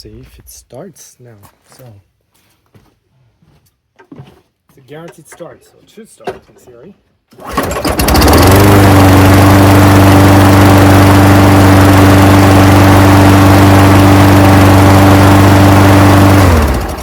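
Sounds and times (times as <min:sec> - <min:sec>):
lawn mower engine running: 0:07.3 - 0:17.0.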